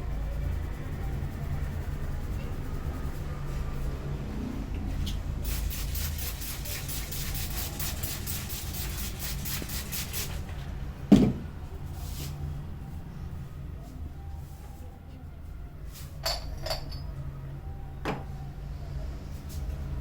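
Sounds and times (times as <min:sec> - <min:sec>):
loud thump: 0:11.1 - 0:11.4.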